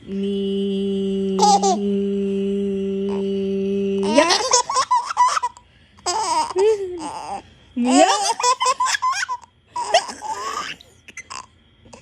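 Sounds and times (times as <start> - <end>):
held humming vocal tone: 0.0 - 5.4
high squealing laugh-like cries: 8.2 - 11.5.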